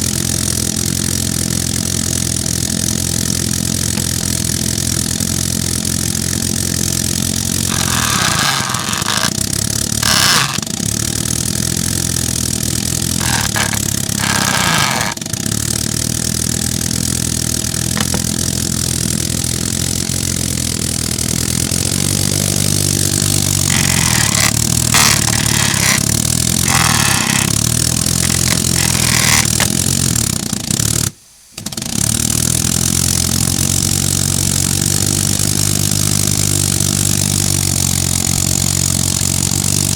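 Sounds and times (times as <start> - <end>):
air piston engine humming: 6.1 - 19.2, 21.9 - 29.9.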